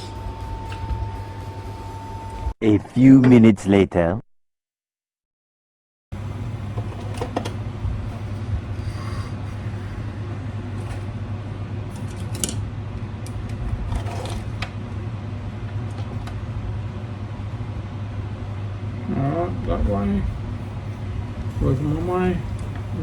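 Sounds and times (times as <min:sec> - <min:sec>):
low hum: 0:00.0 - 0:02.6.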